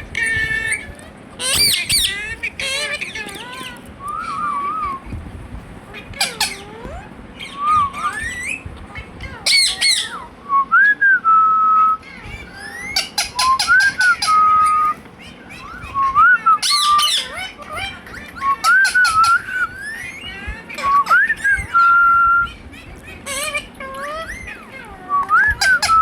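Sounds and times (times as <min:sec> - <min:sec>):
parakeet whistling: 0:00.0 - 0:05.2, 0:06.1 - 0:10.3, 0:10.9 - 0:22.6, 0:25.2 - 0:26.0
parakeet shrill screeches: 0:00.2 - 0:04.5, 0:12.0 - 0:16.0.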